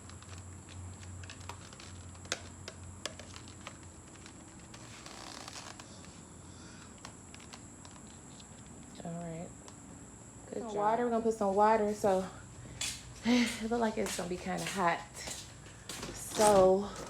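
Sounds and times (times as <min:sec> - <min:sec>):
helmet strap rustling: 0:00.0 - 0:06.2.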